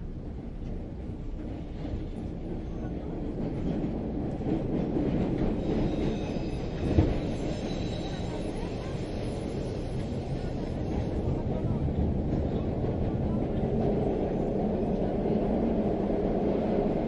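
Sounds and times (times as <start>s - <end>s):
train rumble from inside: 0.0s - 17.0s.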